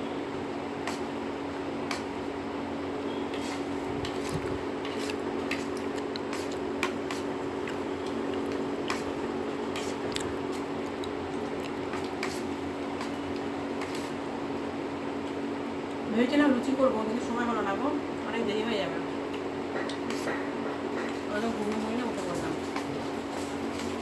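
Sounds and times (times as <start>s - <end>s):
steady mechanical hum: 0.0s - 24.0s
eating crunches and clicks: 4.3s - 9.1s, 9.7s - 12.4s.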